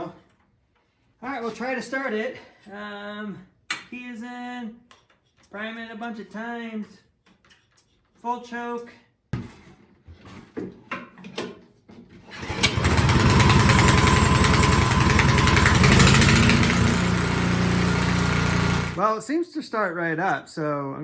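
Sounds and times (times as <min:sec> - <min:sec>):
snowblower engine starting: 0:12.3 - 0:19.0.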